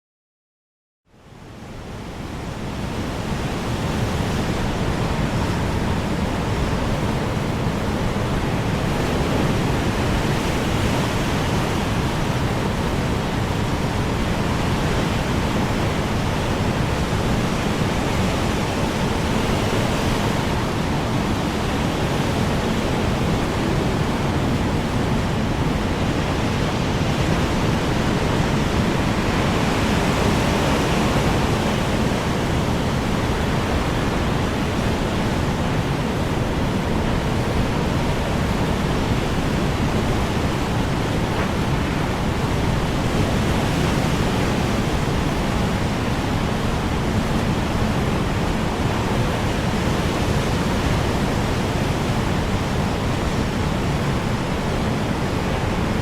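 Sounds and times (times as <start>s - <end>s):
strong wind rushing: 2.3s - 56.0s.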